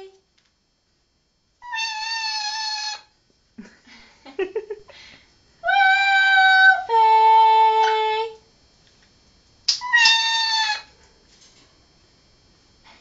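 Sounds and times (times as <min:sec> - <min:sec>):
parrot calling: 0:01.6 - 0:03.1, 0:09.7 - 0:11.0
girl making pitched calls: 0:09.8 - 0:10.9.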